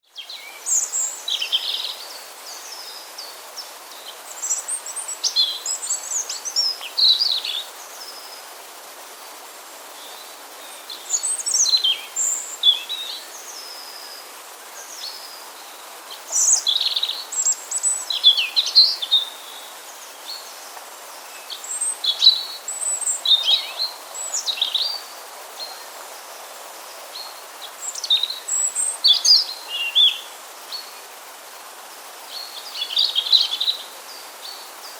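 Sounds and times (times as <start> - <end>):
steady background hiss: 0.0 - 34.9
robin singing: 10.0 - 14.2, 14.8 - 26.0, 27.0 - 31.0.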